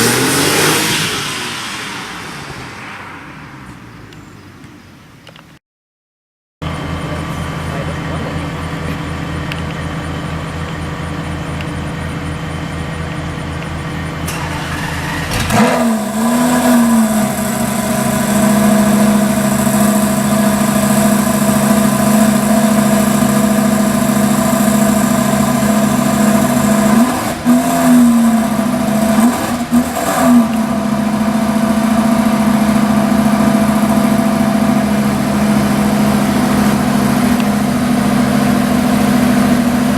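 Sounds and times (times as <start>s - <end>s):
car engine revving: 0.0s - 4.6s, 13.6s - 39.9s
car engine idling: 6.7s - 39.9s.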